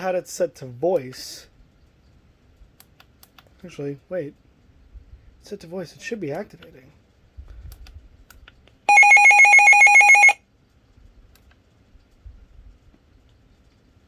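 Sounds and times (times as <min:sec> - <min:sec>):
rapidly pulsing alarm beep: 0:08.9 - 0:10.4.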